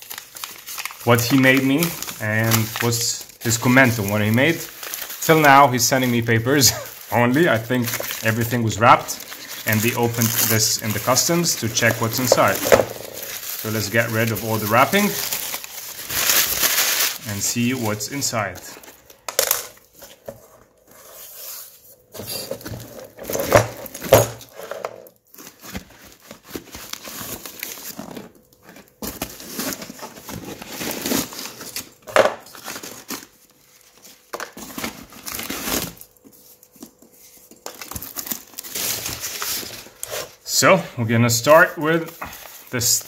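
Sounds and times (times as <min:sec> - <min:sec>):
paper crumpling and tearing: 0:00.0 - 0:18.9, 0:25.3 - 0:40.5.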